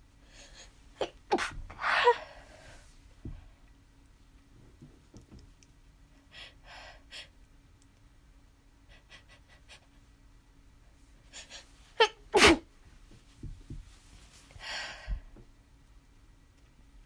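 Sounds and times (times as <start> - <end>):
person sneezing: 1.0 - 2.4, 11.4 - 12.6.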